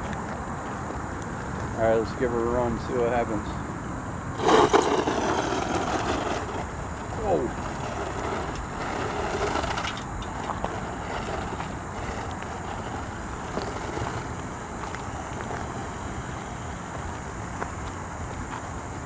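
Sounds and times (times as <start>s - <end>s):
small electric toy truck running: 4.4s - 17.3s.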